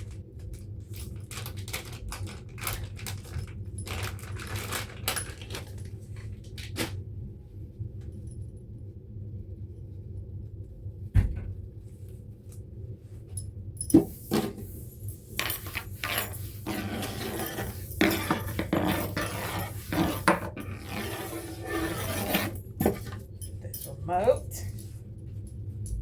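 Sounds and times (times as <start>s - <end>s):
steady low hum: 0.0s - 26.0s
knocks clinks and rustling: 22.2s - 24.9s.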